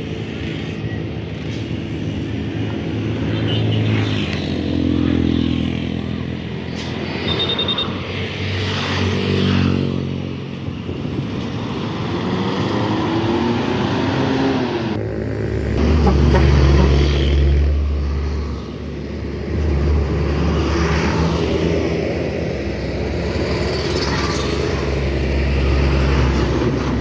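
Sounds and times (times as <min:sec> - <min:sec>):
road traffic passing: 0:00.0 - 0:27.0
bus engine rumble: 0:10.3 - 0:27.0.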